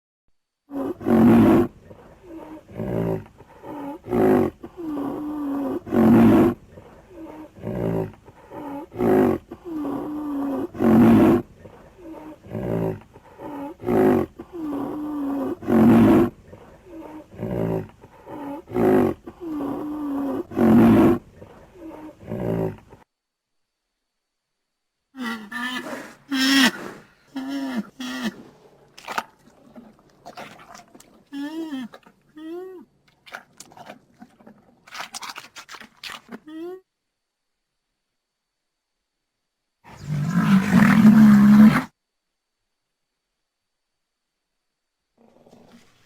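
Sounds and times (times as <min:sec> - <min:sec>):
rhinoceros grunting: 0:00.7 - 0:23.0, 0:25.2 - 0:32.2.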